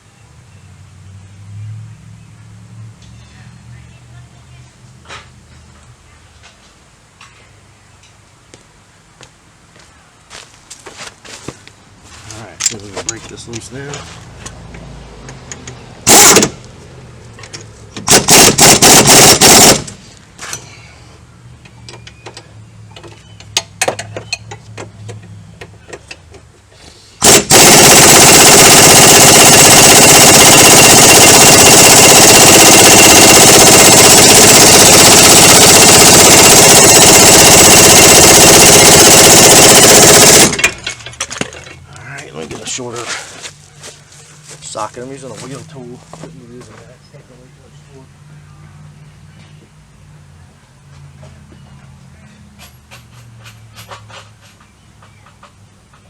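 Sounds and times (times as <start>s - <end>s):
pneumatic impact wrench hammering: 16.0s - 16.6s, 18.0s - 20.0s, 27.2s - 41.0s.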